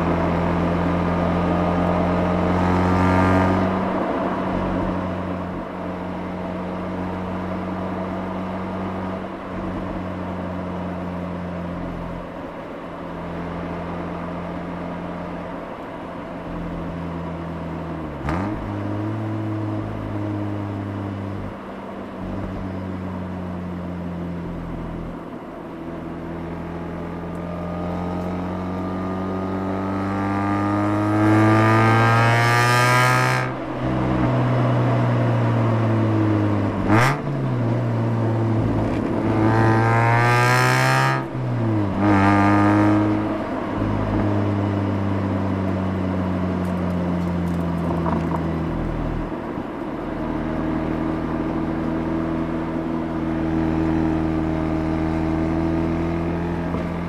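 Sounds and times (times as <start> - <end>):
rotary engine exhaust revving: 26.5 - 49.3.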